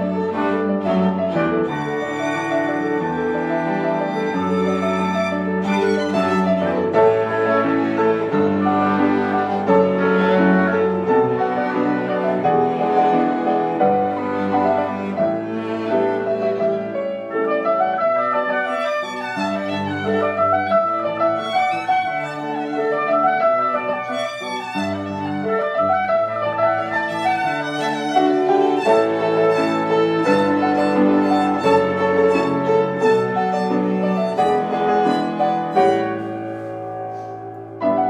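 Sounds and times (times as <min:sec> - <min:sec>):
cello: 0:00.0 - 0:38.0
piano: 0:00.0 - 0:38.0
violin: 0:00.0 - 0:38.0.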